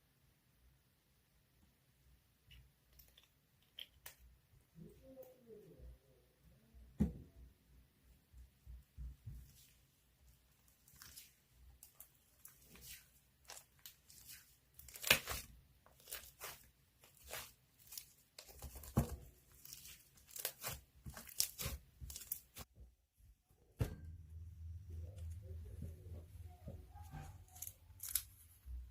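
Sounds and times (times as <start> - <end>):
material crinkling: 9.2 - 22.7
material tearing: 10.8 - 22.7, 27.2 - 28.5.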